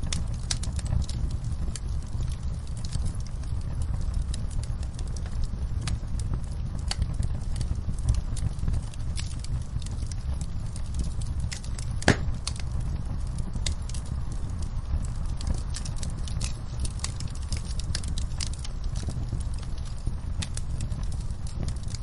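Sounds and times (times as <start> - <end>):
fire popping: 0.0 - 22.0
wood fire crackling: 0.0 - 22.0
low rumble: 11.6 - 13.6.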